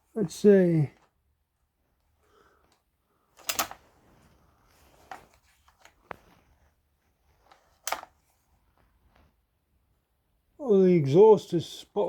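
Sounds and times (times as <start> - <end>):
sharp clicks: 3.4 - 3.8.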